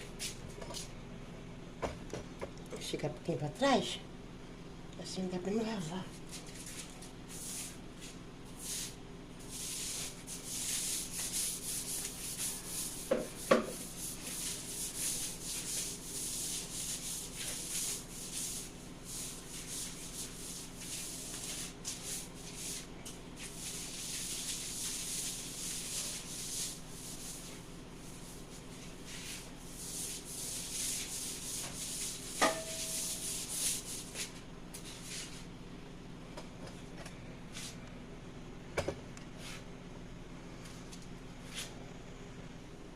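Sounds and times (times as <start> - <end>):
scrubbing a hard surface: 5.8 - 35.5.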